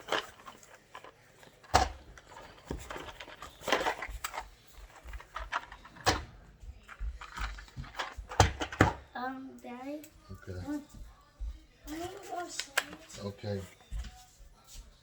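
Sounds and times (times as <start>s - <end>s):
boxes rustling: 0.0s - 9.0s
boxes knocking when set down: 1.6s - 9.0s.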